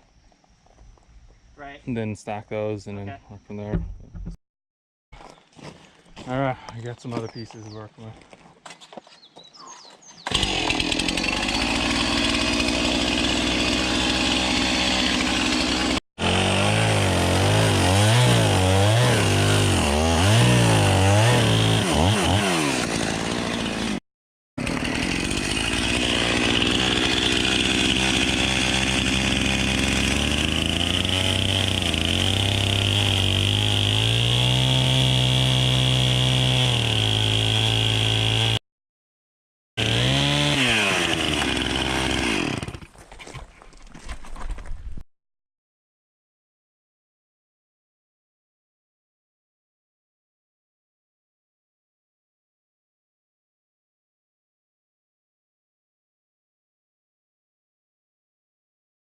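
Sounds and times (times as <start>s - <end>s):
chainsaw engine revving: 10.2s - 24.0s, 24.6s - 38.6s, 39.8s - 42.9s.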